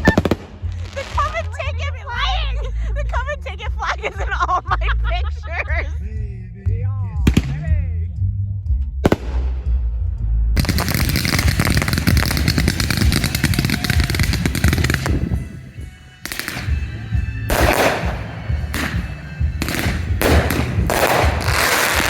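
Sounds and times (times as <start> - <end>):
fireworks bangs: 0.0 - 1.8, 10.6 - 22.0
music playing: 0.0 - 22.0.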